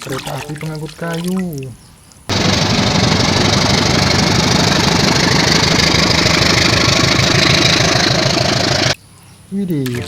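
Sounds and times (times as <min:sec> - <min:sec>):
large engine running: 0:02.3 - 0:09.0.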